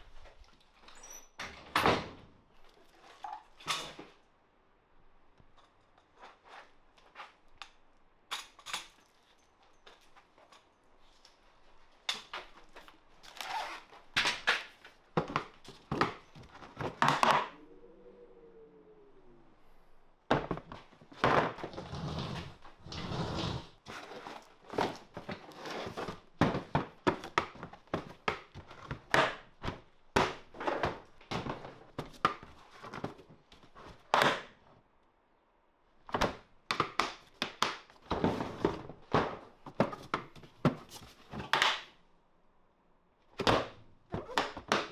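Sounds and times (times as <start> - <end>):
short rising and falling whine: 17.4 - 20.1.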